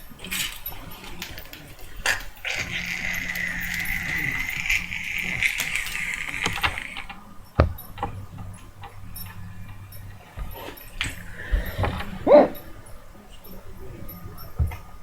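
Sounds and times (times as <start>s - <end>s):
steady high hiss: 0.0s - 15.0s
person hiccuping: 12.2s - 12.6s.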